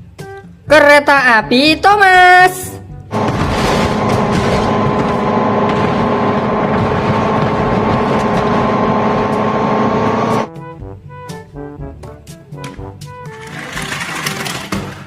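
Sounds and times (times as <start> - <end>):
loud engine-like drone: 3.1 - 10.5.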